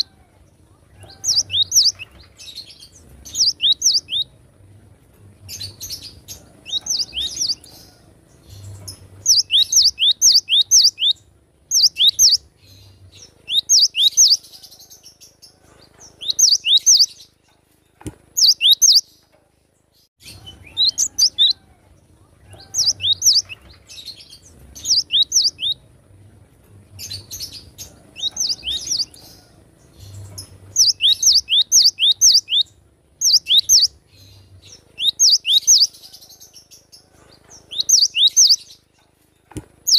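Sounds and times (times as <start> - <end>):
bird singing whistled notes: 1.0 - 4.3, 8.6 - 12.5, 13.2 - 14.4, 16.2 - 17.3, 18.4 - 19.1, 22.6 - 23.6, 24.3 - 25.8, 30.1 - 34.0, 34.7 - 36.0, 37.7 - 38.8.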